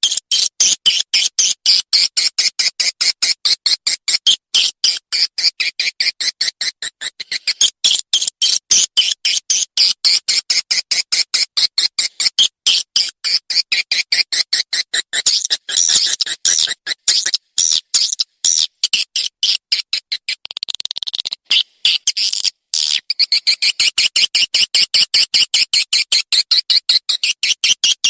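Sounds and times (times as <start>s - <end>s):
high-pitched twittering chirps: 15.2s - 19.6s.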